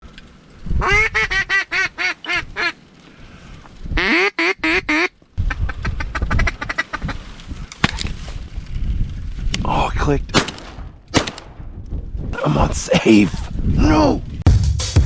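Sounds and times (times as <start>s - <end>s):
duck quacking: 4.0s - 5.1s.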